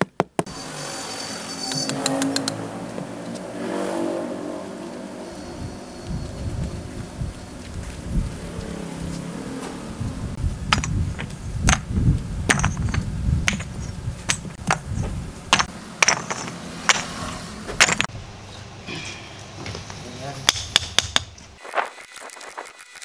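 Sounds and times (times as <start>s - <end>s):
sharp knocks and taps: 19.6s - 21.4s.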